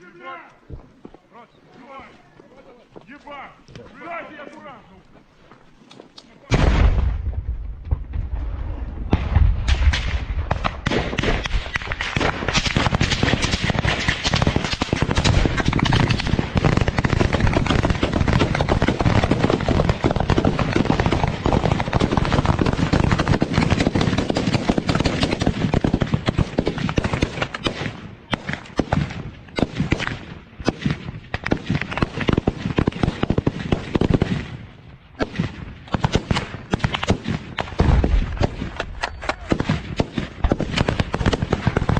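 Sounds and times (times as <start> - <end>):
automatic gunfire: 9.8 - 34.4, 35.2 - 41.9.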